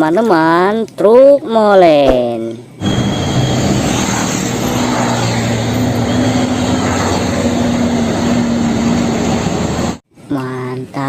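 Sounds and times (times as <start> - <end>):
cleaning machine motor humming: 2.8 - 10.0.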